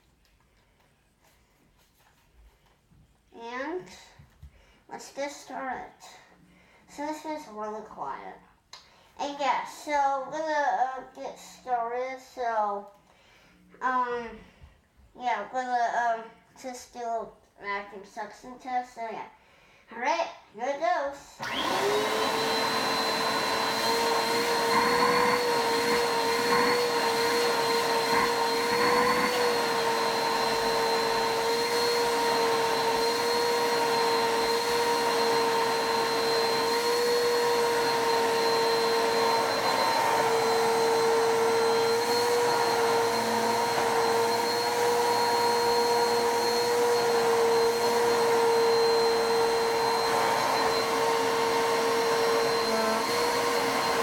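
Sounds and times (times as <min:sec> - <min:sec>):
vacuum cleaner motor whining: 0:21.4 - 0:54.0.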